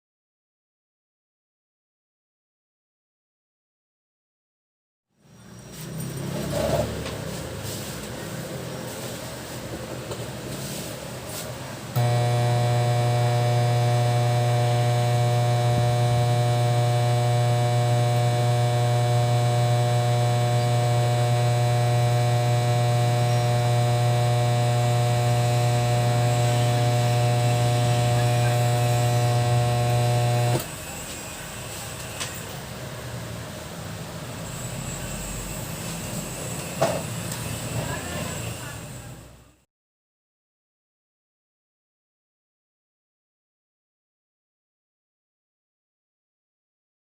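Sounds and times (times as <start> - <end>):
speaker buzzy mains hum: 11.8 - 30.8.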